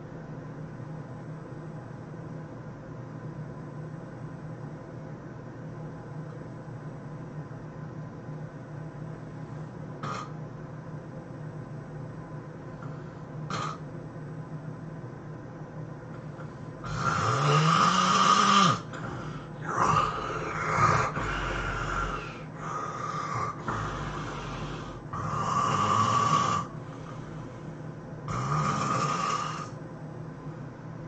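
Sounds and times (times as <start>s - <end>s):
person snoring loudly: 10.0s - 10.4s, 13.5s - 13.8s, 16.8s - 26.7s, 28.3s - 29.8s
quiet breathing: 12.6s - 13.9s, 16.2s - 29.8s.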